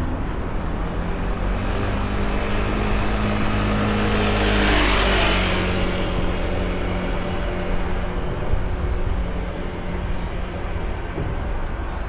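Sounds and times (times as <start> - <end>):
vehicle passing close by: 0.0 - 7.4
low engine hum: 0.0 - 12.0.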